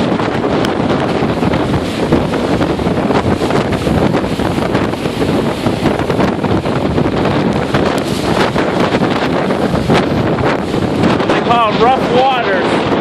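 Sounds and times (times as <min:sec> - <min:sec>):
lake waves breaking: 0:00.0 - 0:13.0
strong wind buffeting microphone: 0:00.0 - 0:13.0.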